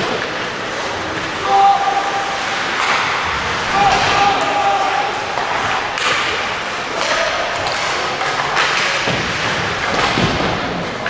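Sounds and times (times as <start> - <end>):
skates scraping on ice: 0.0 - 11.0.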